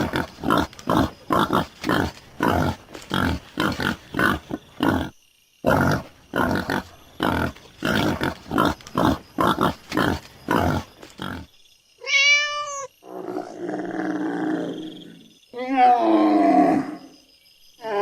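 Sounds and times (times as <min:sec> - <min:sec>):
rough animal grunts: 0:00.0 - 0:11.5
cat meow: 0:12.0 - 0:12.9.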